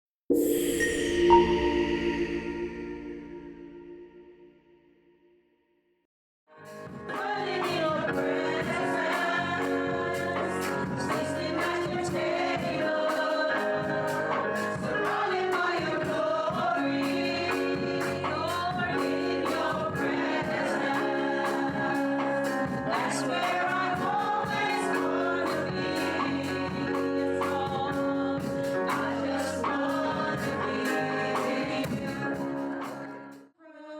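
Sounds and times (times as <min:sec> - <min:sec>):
voices singing gospel music: 0:00.3 - 0:04.3, 0:07.0 - 0:33.4
band with drum beat: 0:06.7 - 0:33.0.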